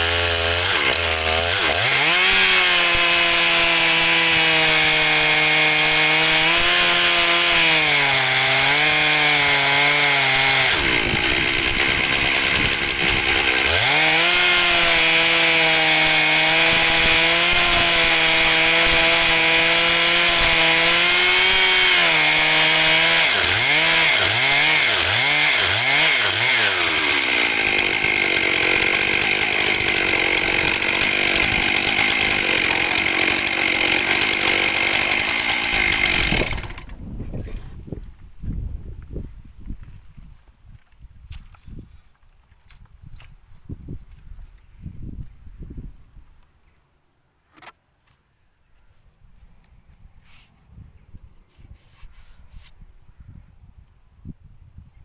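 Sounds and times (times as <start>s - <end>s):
chainsaw cutting through log: 0.0s - 37.1s.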